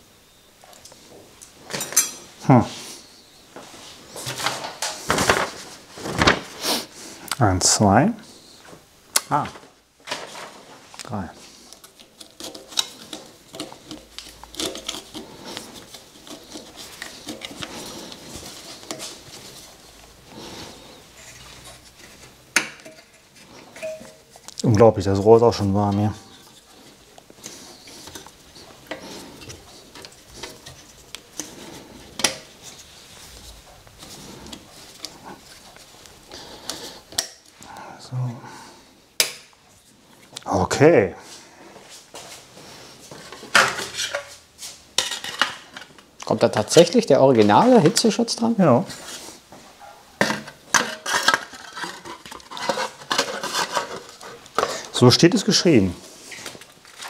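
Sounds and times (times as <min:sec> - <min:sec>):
metal parts and tools clinking: 0:22.8 - 0:24.5
metallic clinks of tools and parts: 0:23.8 - 0:24.3.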